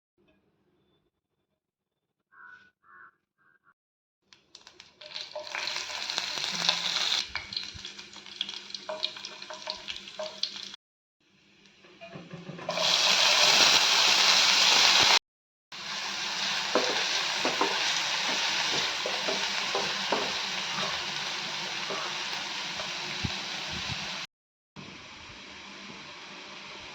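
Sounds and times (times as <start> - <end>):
food frying in hot oil: 4.6 - 10.8, 12.7 - 15.2, 15.8 - 26.9
spoon stirring in pan: 16.0 - 24.1.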